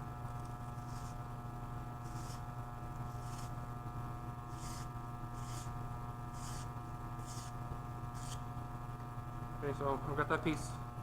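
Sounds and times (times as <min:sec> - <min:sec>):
steady hum: 0:00.0 - 0:11.0
brush scouring copper pipe: 0:00.8 - 0:01.2, 0:02.0 - 0:03.6, 0:04.5 - 0:07.6, 0:08.2 - 0:08.4.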